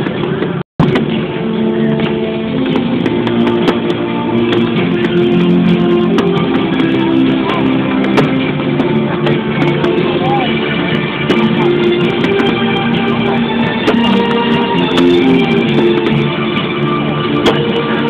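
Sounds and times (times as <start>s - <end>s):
music with held instrumental notes: 0.0s - 18.0s.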